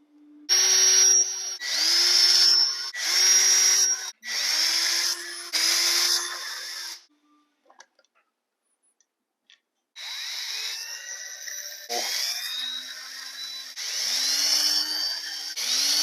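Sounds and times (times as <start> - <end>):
power tool motor whining: 10.0 - 16.0.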